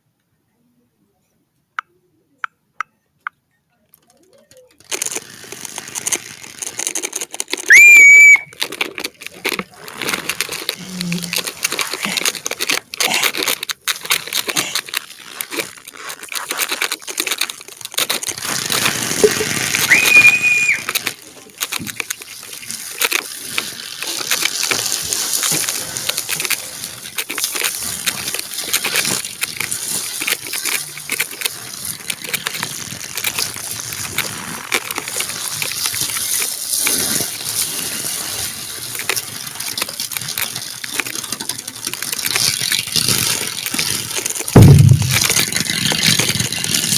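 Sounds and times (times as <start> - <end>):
crackles crunches and rustles: 3.8 - 46.9
short high whistle-like tone: 7.7 - 8.6, 19.9 - 20.8.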